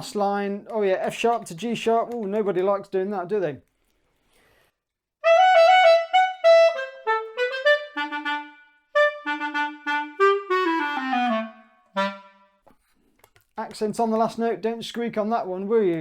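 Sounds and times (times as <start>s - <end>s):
clarinet playing short tongued notes: 5.2s - 12.6s.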